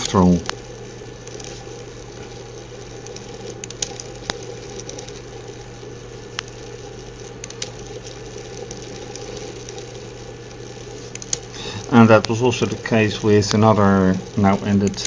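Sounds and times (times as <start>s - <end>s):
small motor whirring hum: 0.0s - 15.0s
sharp clicks: 11.1s - 12.8s.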